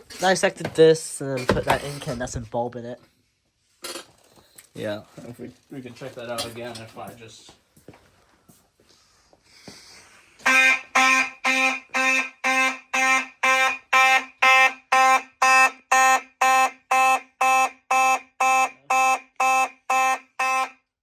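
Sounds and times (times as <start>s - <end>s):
fire alarm horn pulsing: 10.4s - 21.0s.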